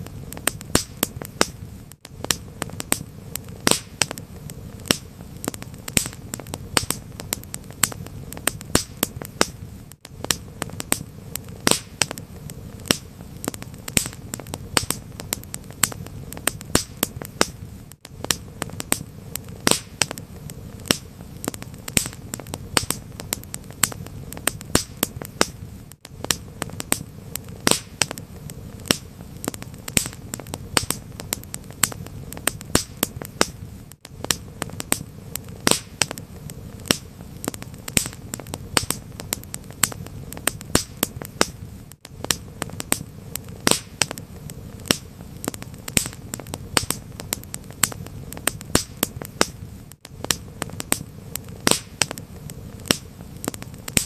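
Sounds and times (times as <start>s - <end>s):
low rumble and hiss of burning: 0.0s - 54.0s
wood fire crackling: 0.0s - 54.0s.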